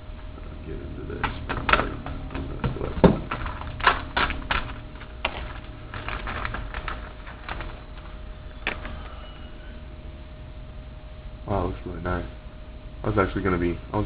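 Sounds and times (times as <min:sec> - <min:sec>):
packaging crinkling and clicking: 0:01.2 - 0:09.2.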